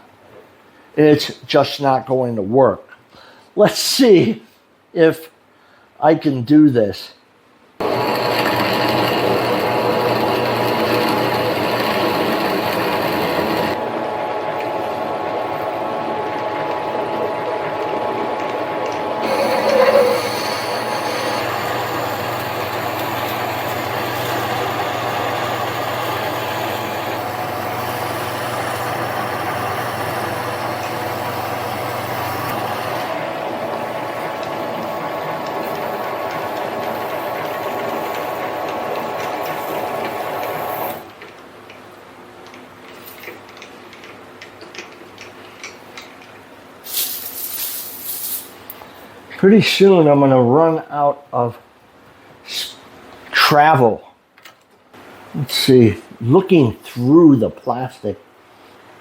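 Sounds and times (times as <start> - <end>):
drill bit boring into plastic: 7.8 - 13.8, 17.7 - 41.0
lathe motor hum: 7.8 - 41.1
loud hiss: 19.2 - 23.0, 46.8 - 48.8.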